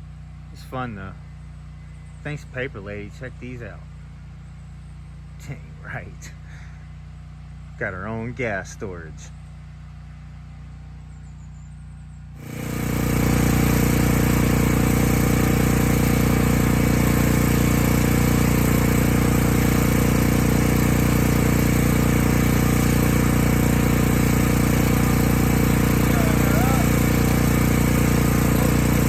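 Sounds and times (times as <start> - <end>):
portable generator running: 0.0 - 4.1, 5.4 - 6.9, 12.4 - 29.0.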